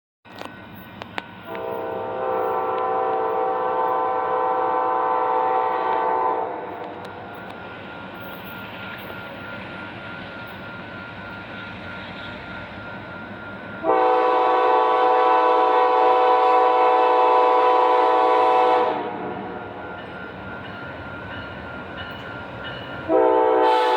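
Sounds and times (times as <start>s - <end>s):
approaching train noise: 0.3s - 23.9s
train air horn chord: 1.5s - 6.9s, 13.8s - 19.5s, 23.1s - 23.9s.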